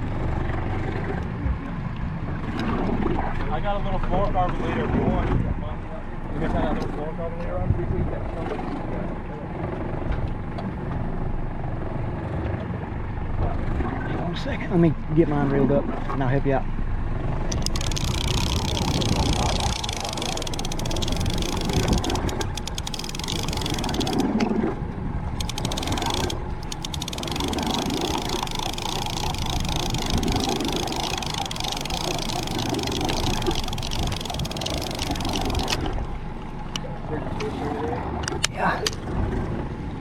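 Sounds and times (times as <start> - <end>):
wind: 0.0 - 40.0
faint clicks: 17.5 - 24.5, 25.4 - 36.0.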